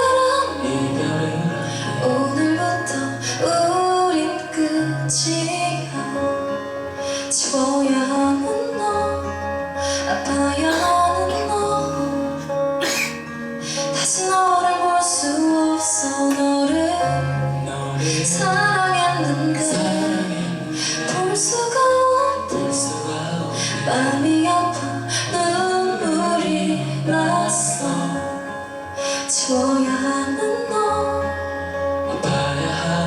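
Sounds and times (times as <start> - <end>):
live band playing pop ballad: 0.0 - 33.0
woman singing: 0.0 - 33.0.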